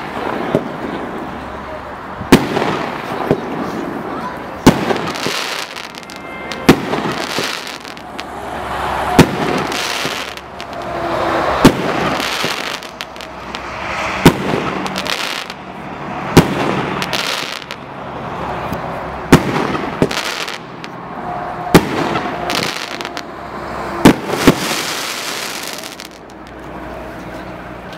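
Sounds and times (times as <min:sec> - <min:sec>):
firework bangs: 0:00.0 - 0:01.4, 0:02.2 - 0:17.9, 0:19.2 - 0:21.0, 0:21.6 - 0:26.7
hissing of firework bursts: 0:02.3 - 0:17.8, 0:19.3 - 0:20.9, 0:24.0 - 0:26.8.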